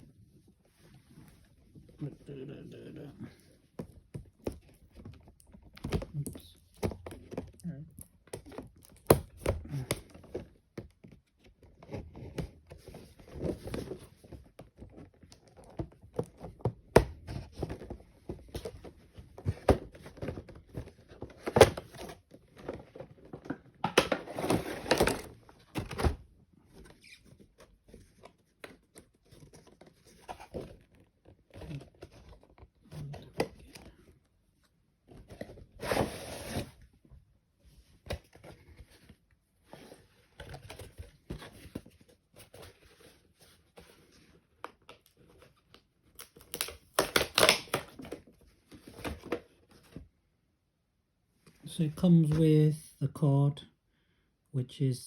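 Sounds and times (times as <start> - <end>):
packaging knocks and scrapes: 11.6 - 33.7.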